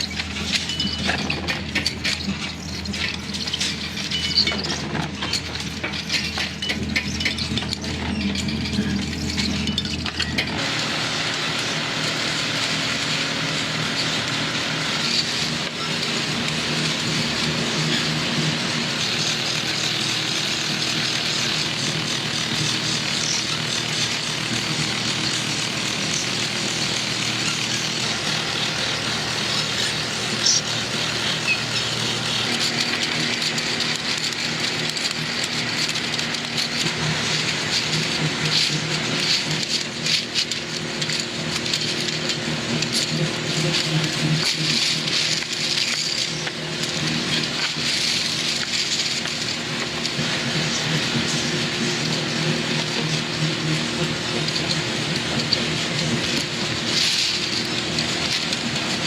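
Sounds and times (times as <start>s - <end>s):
sharp machine clicks and knocks: 0.0s - 10.6s, 14.0s - 59.0s
factory machinery hum and clatter: 0.0s - 59.0s.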